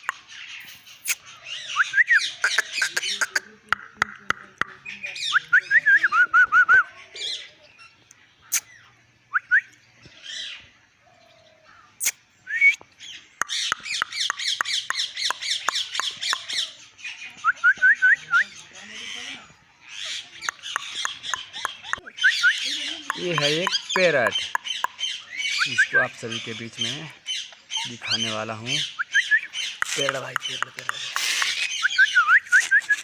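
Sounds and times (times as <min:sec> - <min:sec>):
parrot squawking and chirping: 0:00.0 - 0:03.6, 0:13.0 - 0:17.6, 0:18.3 - 0:32.2.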